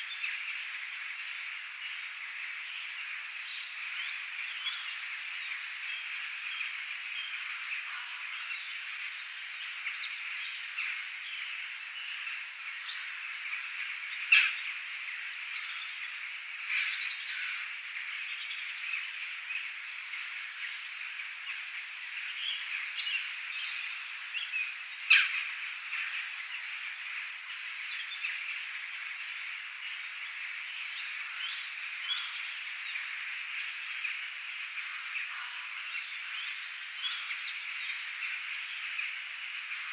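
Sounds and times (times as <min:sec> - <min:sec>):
rain: 0:00.0 - 0:39.9.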